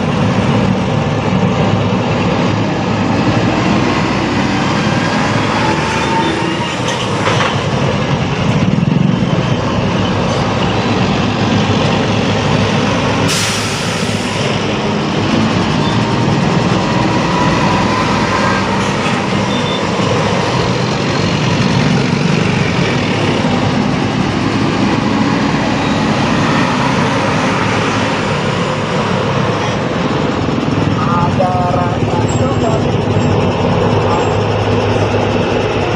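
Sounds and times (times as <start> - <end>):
heavy road traffic engines: 0.0 - 35.9
brief sharp hiss: 13.3 - 14.4.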